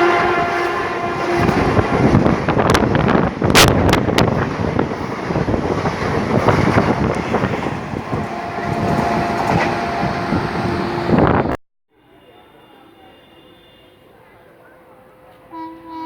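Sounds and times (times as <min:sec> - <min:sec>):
train rushing past: 0:00.0 - 0:11.6.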